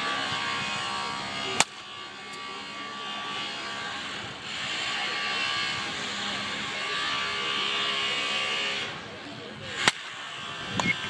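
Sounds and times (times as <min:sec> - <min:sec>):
steady outdoor hum: 0:00.0 - 0:11.0
sharp bat crack: 0:01.6 - 0:01.8, 0:09.8 - 0:10.1.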